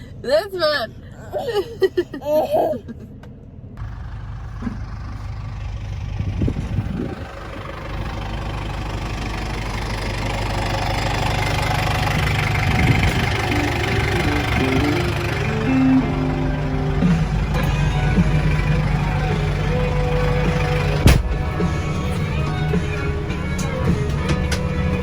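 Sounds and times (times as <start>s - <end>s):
engine running steadily: 3.8s - 25.0s
background music: 13.4s - 25.0s.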